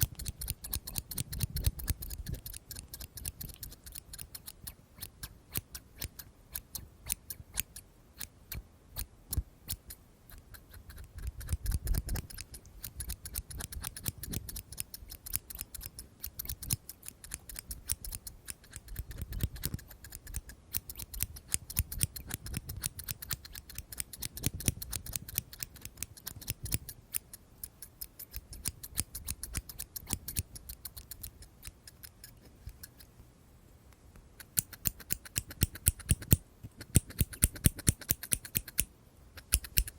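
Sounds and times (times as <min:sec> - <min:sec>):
scissors snipping: 0:00.0 - 0:33.1, 0:34.4 - 0:39.9.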